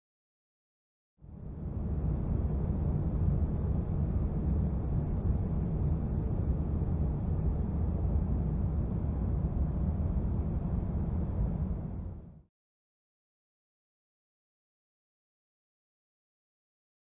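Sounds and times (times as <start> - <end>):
airplane cabin engine rumble: 1.3 - 12.4.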